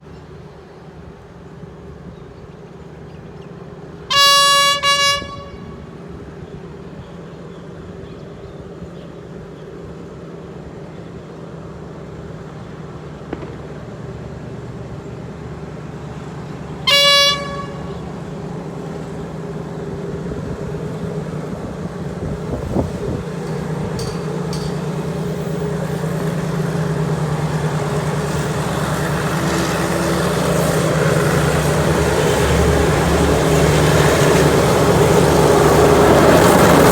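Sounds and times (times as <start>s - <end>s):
train rumbling: 0.0s - 36.9s
train horn: 4.1s - 6.3s, 16.8s - 18.3s.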